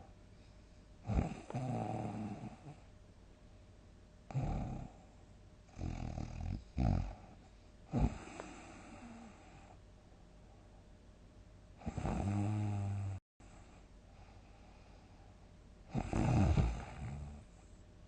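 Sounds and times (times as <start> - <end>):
person snoring loudly: 1.1 - 2.8, 4.3 - 5.0, 5.8 - 7.2, 7.9 - 9.5, 11.8 - 13.2, 15.9 - 17.4.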